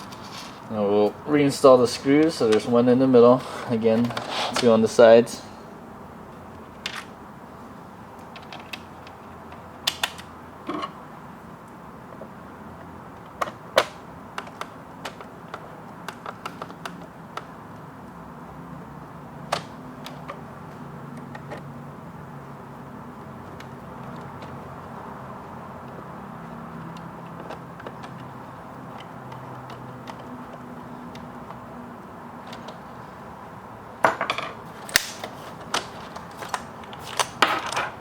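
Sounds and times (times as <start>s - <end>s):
screwdriver clicking and tapping: 25.8s - 31.6s.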